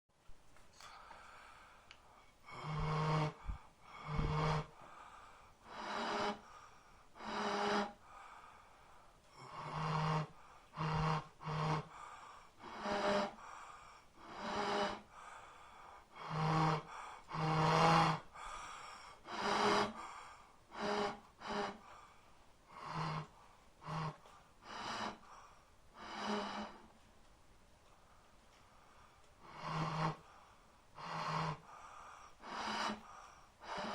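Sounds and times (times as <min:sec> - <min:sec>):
breathy gasping vocal sounds: 0:00.8 - 0:27.0.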